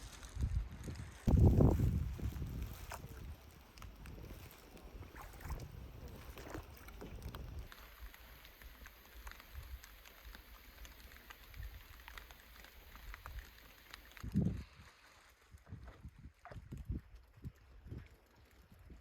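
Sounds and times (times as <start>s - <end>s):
wind rumbling on microphone: 0.0s - 14.9s, 15.5s - 19.0s
paddle splashes and drips: 1.6s - 14.2s.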